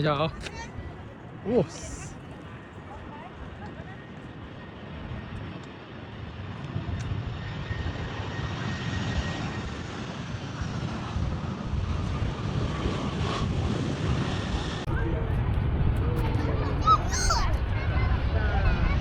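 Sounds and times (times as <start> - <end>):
jet engine roar: 0.0 - 19.0.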